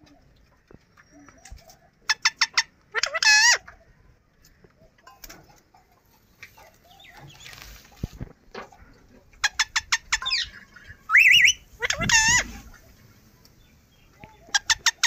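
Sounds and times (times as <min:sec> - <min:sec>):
parakeet calling and screeching: 0:02.1 - 0:03.6, 0:09.5 - 0:12.7.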